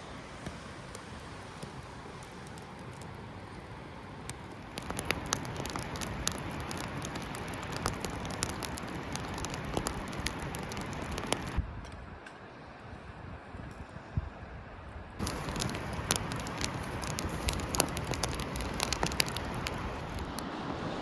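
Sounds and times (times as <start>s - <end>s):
campfire crackling and popping: 0.2s - 11.6s, 15.2s - 20.5s.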